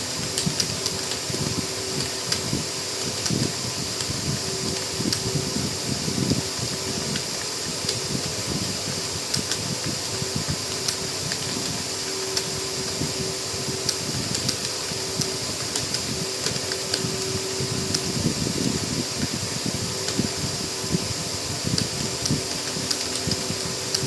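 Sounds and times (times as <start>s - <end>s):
faint hum: 0.0s - 24.0s
fan whir: 0.0s - 24.0s
keyboard keys typing: 13.8s - 19.4s, 21.8s - 24.0s.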